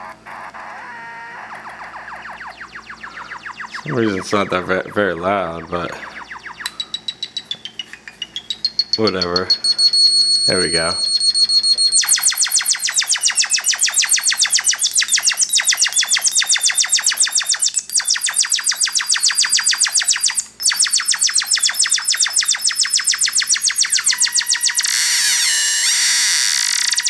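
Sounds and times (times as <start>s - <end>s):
synthesizer pulsing tone: 0.0s - 7.0s, 8.8s - 20.1s.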